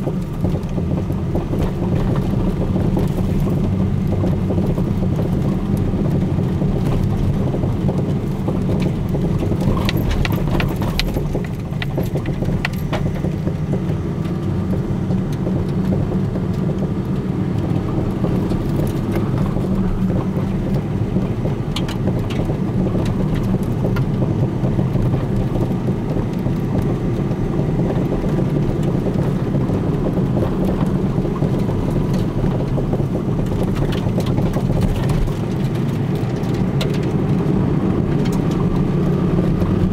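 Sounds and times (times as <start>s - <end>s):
car road noise: 0.0s - 39.9s
suspension knocks and clicks: 0.0s - 39.9s.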